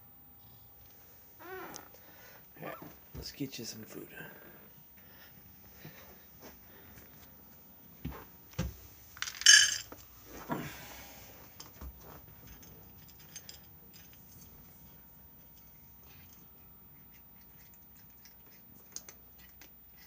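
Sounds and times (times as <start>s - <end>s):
dishes and utensils clattering: 9.2s - 10.0s
loud ringing clink: 9.3s - 9.9s.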